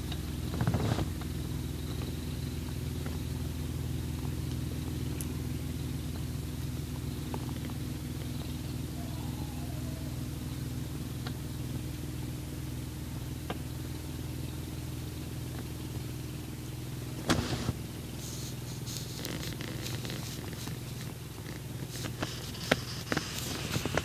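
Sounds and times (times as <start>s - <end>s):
cat purring: 17.3s - 24.0s.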